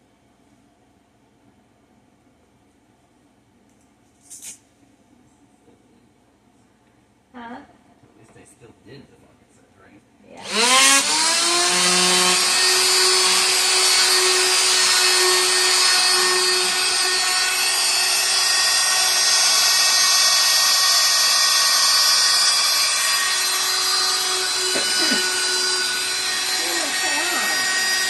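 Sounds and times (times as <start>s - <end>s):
electric sander on wood: 10.4s - 28.0s.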